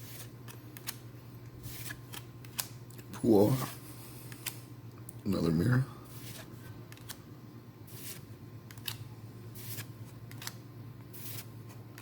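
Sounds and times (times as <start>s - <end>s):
low steady hum: 0.0s - 12.0s
trading cards swishing: 1.6s - 2.6s, 7.9s - 9.0s, 9.6s - 11.8s.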